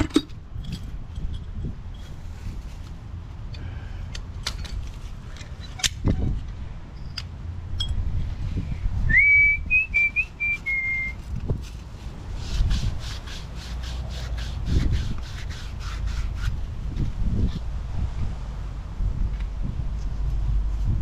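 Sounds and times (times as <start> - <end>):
wind rumbling on microphone: 0.0 - 21.0
person whistling a tune: 9.0 - 11.2.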